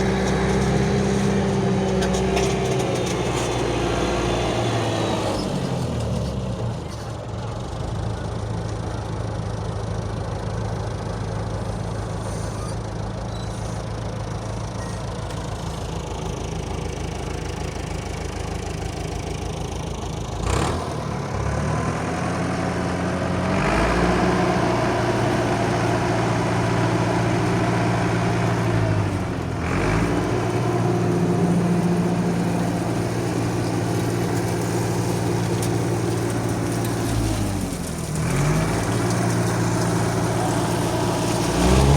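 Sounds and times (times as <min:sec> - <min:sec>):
truck engine idling and revving: 0:00.0 - 0:41.9.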